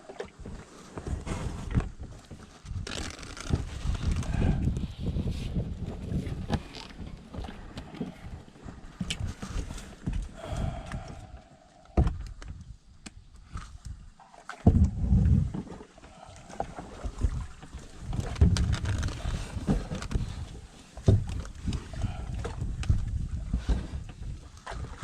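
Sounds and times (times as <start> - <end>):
wind buffeting microphone: 3.5 - 11.4, 13.5 - 15.7, 16.9 - 25.0
water splashing: 14.2 - 19.1.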